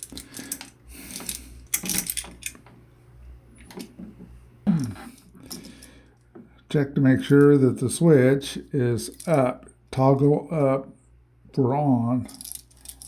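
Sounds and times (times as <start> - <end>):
small metallic clicks and rattles: 0.0 - 2.6.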